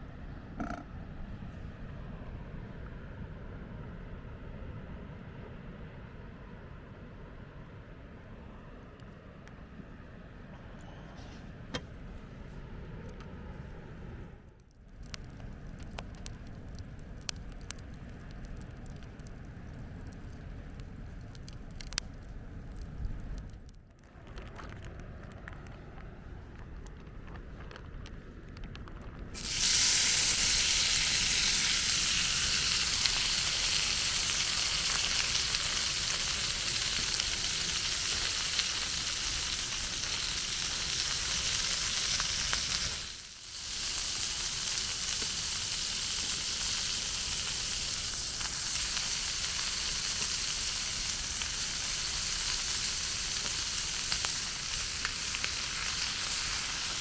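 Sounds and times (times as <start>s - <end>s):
food sizzling in a frying pan: 29.4s - 57.0s.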